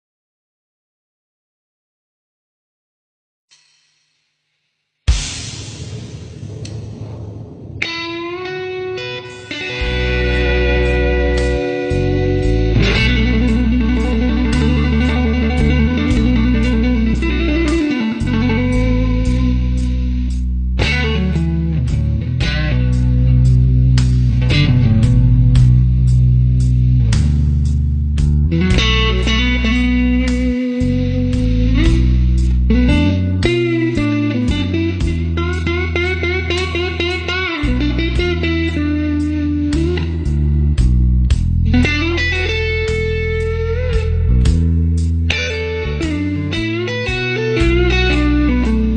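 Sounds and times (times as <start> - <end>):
held low bass notes: 6.4 - 48.9
electric guitar single notes: 7.8 - 27.5, 28.4 - 48.9
electronic instrumental music: 8.0 - 48.9.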